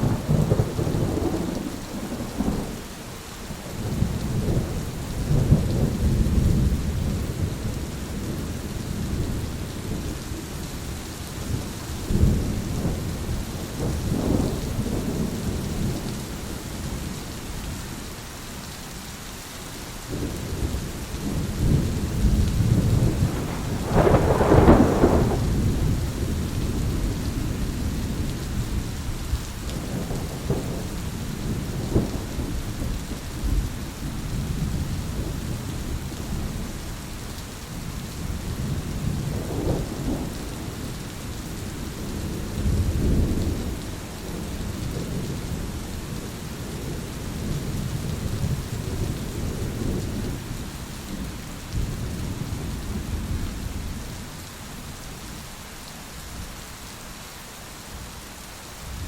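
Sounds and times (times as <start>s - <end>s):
thunder rumbling: 0.0s - 2.9s, 11.4s - 17.2s, 20.1s - 28.9s, 29.7s - 36.8s, 38.2s - 54.2s
rain falling: 0.0s - 59.0s
sharp thunder peal: 22.2s - 26.1s.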